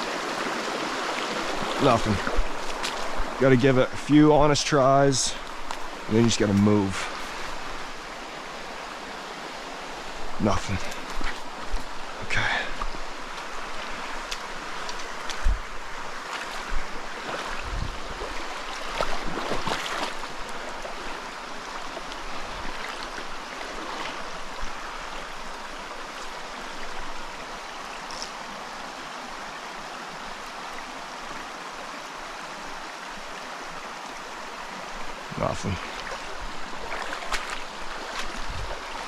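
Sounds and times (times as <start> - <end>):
stream running over rock: 0.0 - 39.0.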